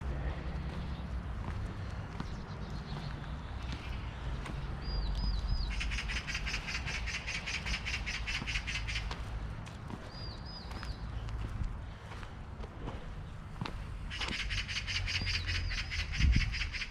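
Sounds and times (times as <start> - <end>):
magpie rapid rattling chatter: 5.5 - 9.1, 14.1 - 16.9.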